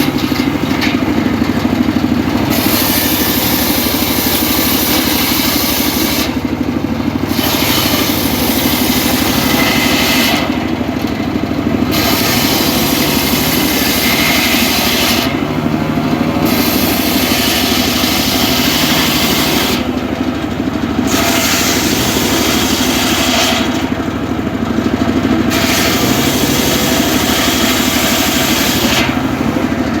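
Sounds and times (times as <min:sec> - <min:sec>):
circular saw cutting wood: 0:00.0 - 0:30.0
low machine drone: 0:08.1 - 0:30.0.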